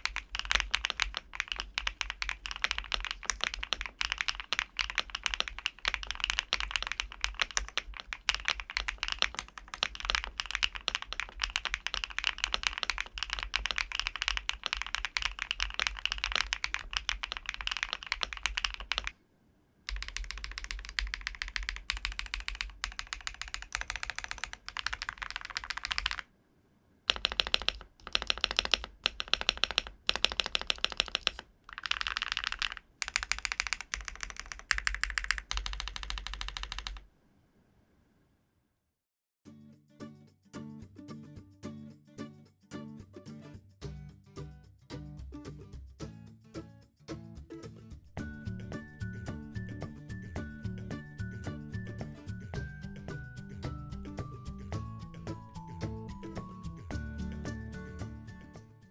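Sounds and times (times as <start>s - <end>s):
mechanical keyboard typing: 0.0s - 19.2s, 19.9s - 26.3s, 27.1s - 37.2s.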